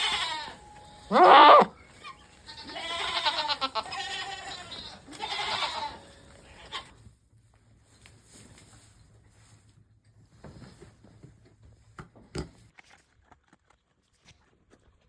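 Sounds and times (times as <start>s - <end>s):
goats bleating: 0.0s - 6.9s.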